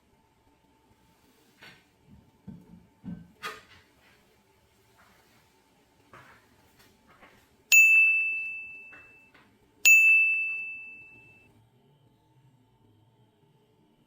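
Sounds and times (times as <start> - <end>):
high bell-like dings: 7.7 - 11.5.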